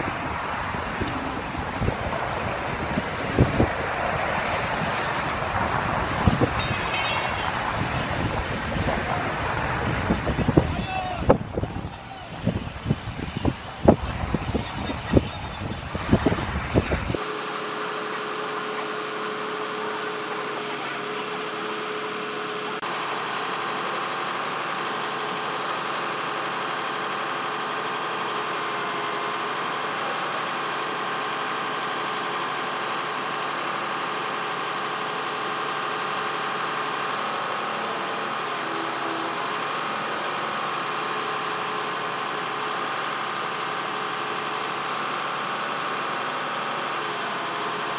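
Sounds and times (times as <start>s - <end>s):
gusty buffeting and thumps: 0.0s - 17.2s
engine humming steadily: 0.0s - 47.9s.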